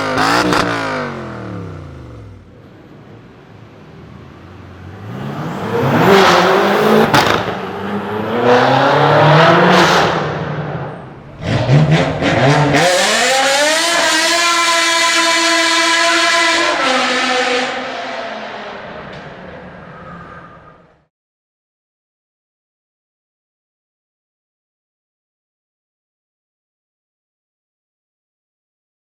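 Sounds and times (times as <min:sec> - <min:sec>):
car engine accelerating hard: 0:00.0 - 0:02.6, 0:04.5 - 0:18.9.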